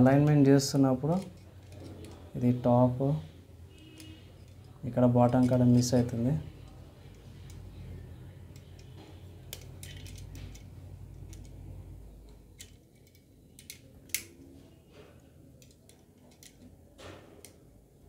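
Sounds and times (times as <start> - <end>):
clicks and taps of metal parts: 8.5 - 11.6, 12.2 - 14.4, 15.6 - 17.7.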